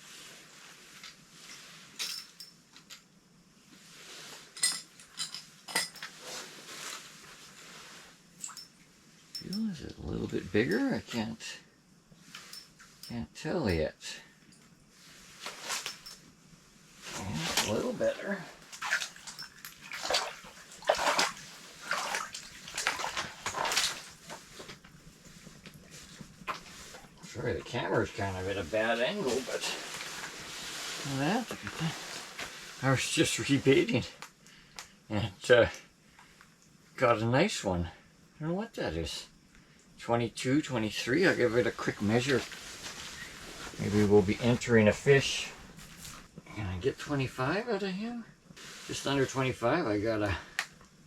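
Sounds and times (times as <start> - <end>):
soft rustling: 6.1 - 9.0, 14.6 - 33.8, 41.2 - 46.4, 48.6 - 49.4
fish splashing in water: 18.7 - 24.4.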